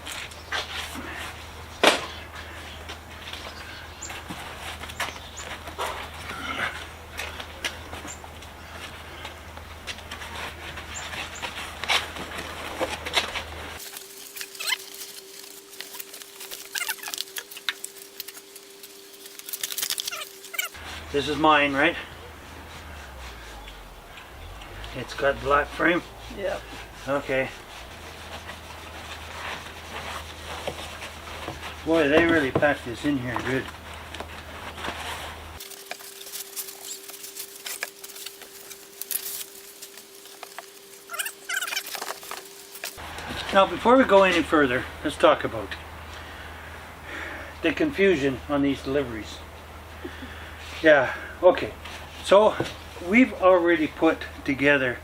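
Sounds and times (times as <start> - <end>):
faint steady hum: 0.0 - 55.0
packing material rustling: 13.2 - 20.8, 35.0 - 43.0
high squeaks falling in pitch: 14.2 - 15.2, 16.5 - 17.6, 19.7 - 20.8, 41.0 - 42.4
light rustling: 34.6 - 43.0.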